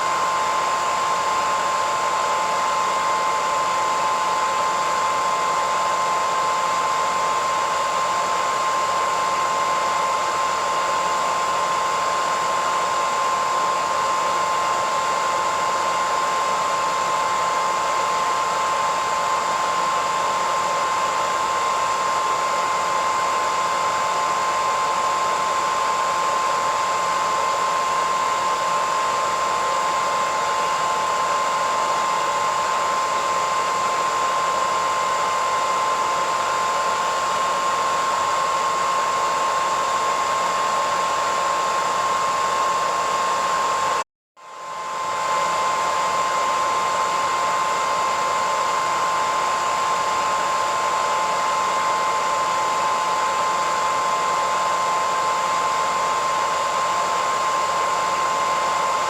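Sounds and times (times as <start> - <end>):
hairdryer running: 0.0 - 59.0.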